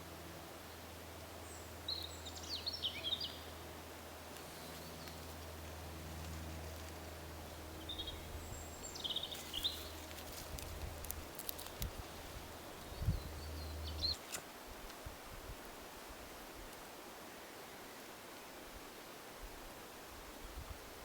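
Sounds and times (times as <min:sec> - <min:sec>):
steady low hum: 0:00.0 - 0:14.2
bird chirps: 0:07.8 - 0:10.0, 0:12.9 - 0:14.2.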